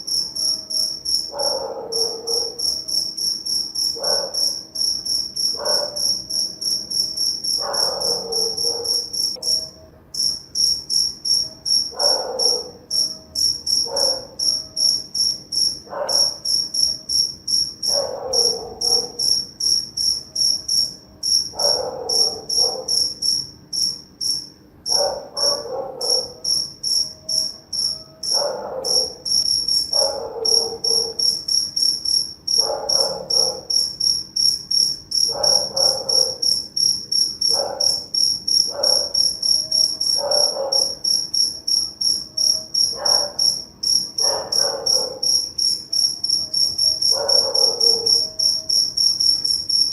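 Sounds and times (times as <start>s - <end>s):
crickets chirping: 0.0s - 49.9s
dog barking: 1.3s - 2.8s, 4.0s - 4.6s, 5.5s - 6.2s, 7.6s - 9.7s, 11.5s - 12.9s, 13.8s - 14.7s, 15.8s - 16.4s, 17.9s - 19.3s, 21.5s - 23.2s, 24.9s - 26.6s, 28.3s - 31.4s, 32.6s - 33.9s, 35.3s - 36.6s, 37.5s - 38.1s, 38.7s - 39.4s, 40.0s - 41.3s, 42.4s - 43.6s, 44.2s - 45.4s, 46.4s - 48.3s.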